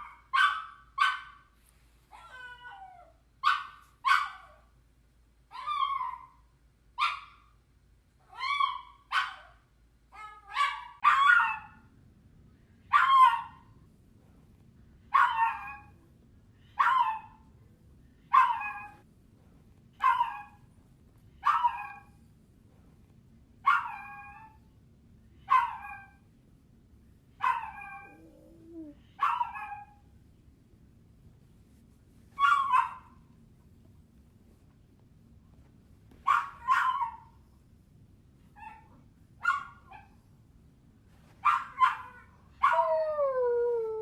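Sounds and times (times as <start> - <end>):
puppy yelping: 20.0 - 20.6, 36.2 - 37.3.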